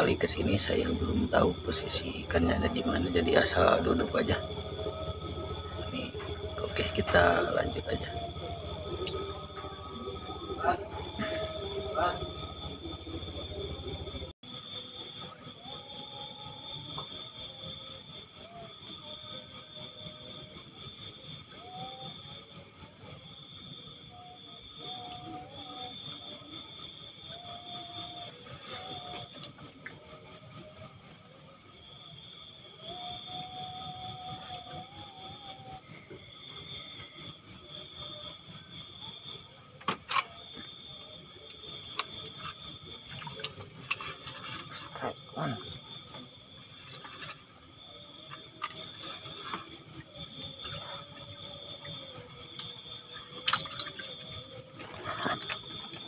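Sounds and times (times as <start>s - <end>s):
crickets chirping: 0.0s - 56.0s
steady high insect trill: 0.0s - 56.0s.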